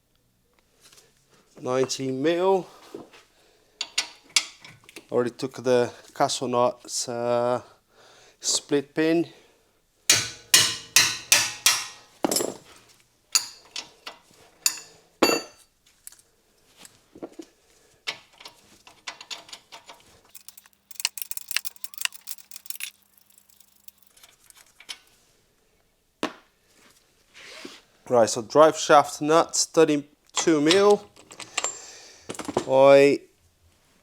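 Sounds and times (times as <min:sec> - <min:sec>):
hammer striking steel: 0:10.1 - 0:12.6, 0:13.4 - 0:13.7, 0:14.7 - 0:15.6
metal clinks: 0:10.1 - 0:12.7, 0:13.3 - 0:15.6, 0:20.3 - 0:24.6
metal on metal rattle: 0:10.1 - 0:12.7, 0:13.4 - 0:15.6, 0:18.1 - 0:25.0.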